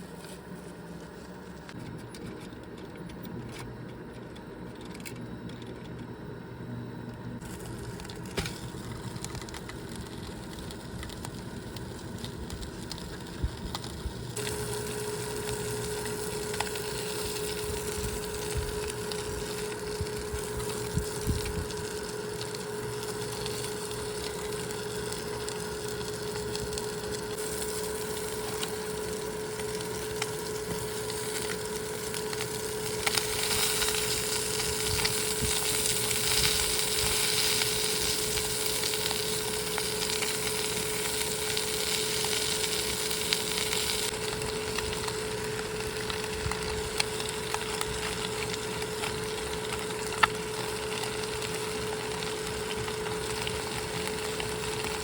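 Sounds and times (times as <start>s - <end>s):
sharp pops of frying: 8.0s - 55.0s
food sizzling in a pan: 14.3s - 55.0s.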